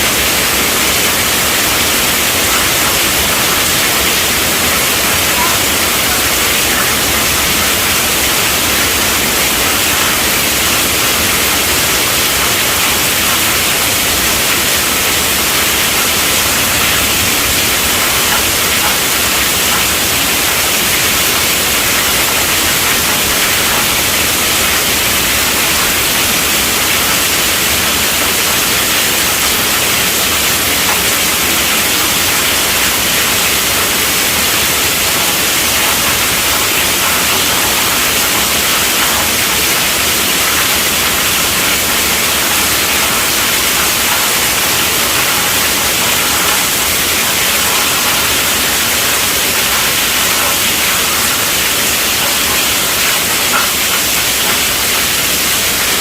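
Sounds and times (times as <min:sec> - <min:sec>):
heavy rain on a tent roof: 0:00.0 - 0:56.0.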